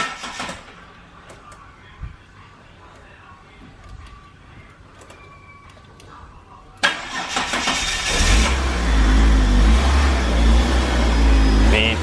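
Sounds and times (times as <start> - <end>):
car engine starting and running: 0.0 - 0.8, 6.8 - 12.0.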